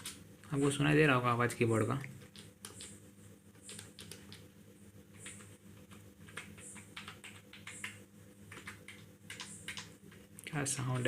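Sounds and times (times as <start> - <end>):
steady low hum: 0.0 - 11.0
keyboard typing clicks: 2.2 - 3.0, 3.6 - 4.5, 5.2 - 11.0.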